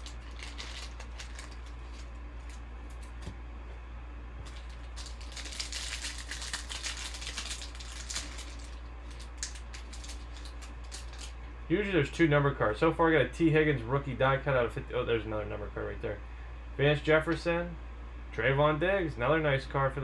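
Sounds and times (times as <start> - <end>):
cards clicking and rustling: 0.0 - 3.4, 4.4 - 11.4
low electrical hum: 0.0 - 20.0.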